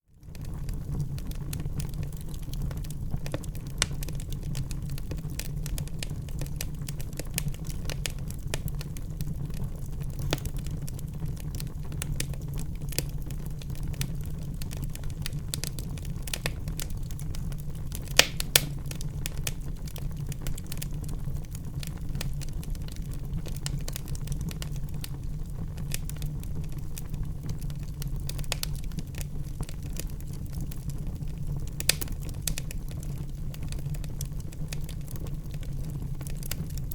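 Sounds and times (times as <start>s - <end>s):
fire crackling in a fireplace: 0.0s - 36.9s
loud sharp pops of fire: 15.1s - 19.7s, 31.6s - 32.8s.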